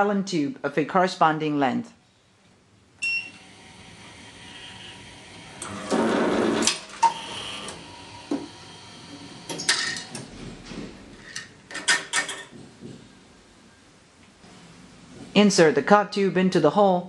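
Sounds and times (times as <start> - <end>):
electric paper drill running: 3.3 - 9.6.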